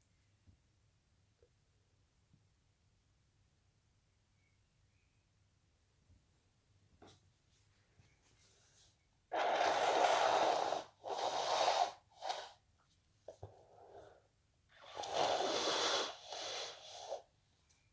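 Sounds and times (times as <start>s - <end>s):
person blowing nose: 9.3s - 12.6s, 14.8s - 17.2s.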